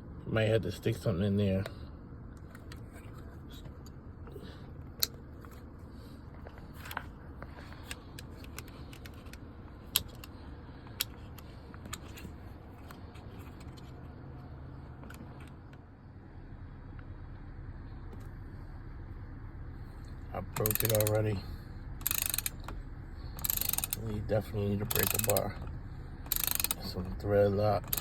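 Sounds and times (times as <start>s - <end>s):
low steady hum: 0.0s - 28.0s
hand tools clicking on plastic: 20.6s - 21.2s, 24.9s - 25.5s.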